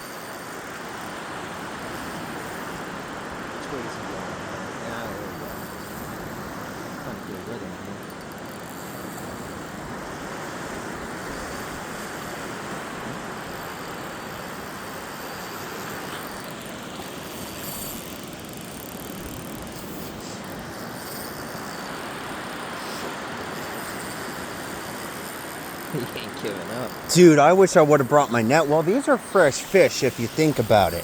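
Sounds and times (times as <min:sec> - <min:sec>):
creek water rushing: 0:25.9 - 0:31.0.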